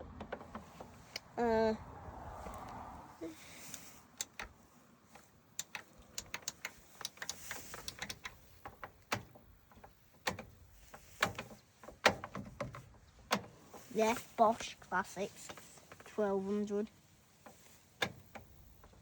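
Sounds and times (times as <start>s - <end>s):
plastic dial clicks: 5.2s - 10.6s.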